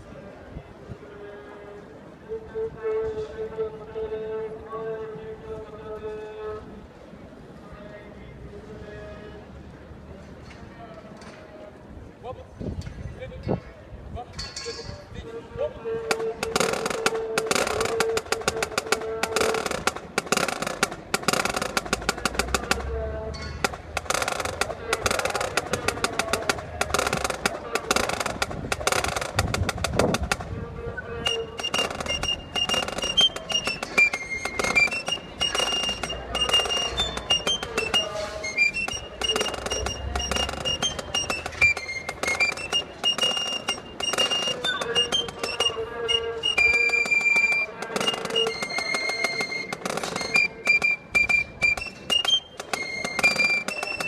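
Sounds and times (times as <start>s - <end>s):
marching wind band playing: 16.1s - 30.5s, 31.2s - 54.0s
rhythmic percussion strokes: 16.1s - 30.5s, 31.2s - 54.0s.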